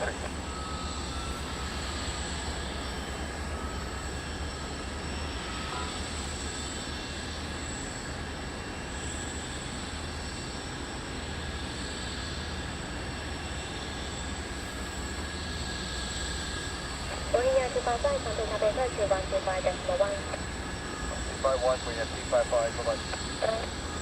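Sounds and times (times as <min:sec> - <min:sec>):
high steady whine: 0:00.0 - 0:07.0, 0:14.8 - 0:24.0
jet engines rumbling: 0:00.0 - 0:24.0.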